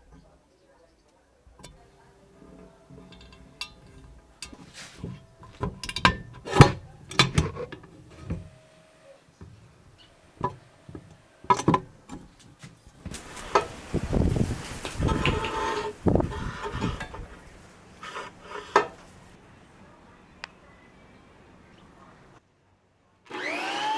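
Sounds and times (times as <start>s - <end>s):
knocks of hard parts: 1.6s - 8.6s, 9.4s - 13.2s.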